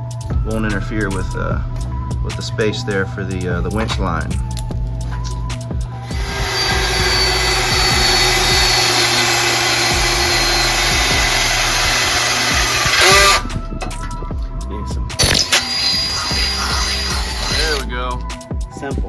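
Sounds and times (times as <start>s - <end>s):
power drill boring steel: 6.0s - 13.5s, 15.2s - 17.9s.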